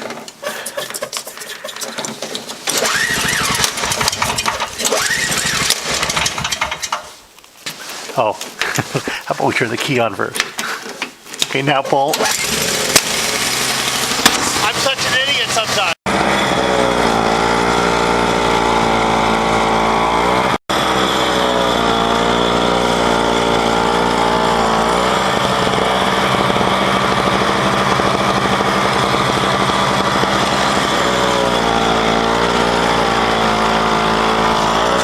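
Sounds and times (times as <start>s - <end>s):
snowblower engine running: 2.6s - 6.9s, 12.2s - 35.0s.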